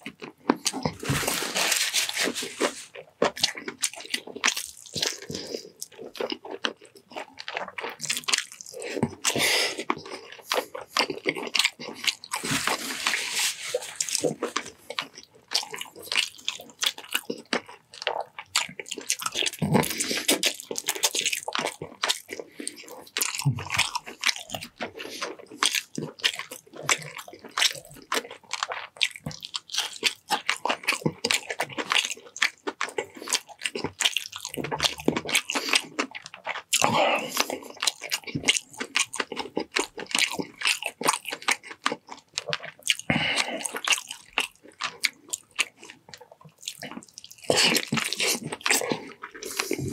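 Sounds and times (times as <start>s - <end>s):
person chewing and crunching food: 0.0s - 49.9s.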